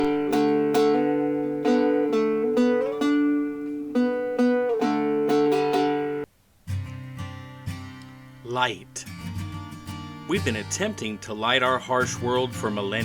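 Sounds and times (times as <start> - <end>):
plucked string instrument chords: 0.0 - 6.3.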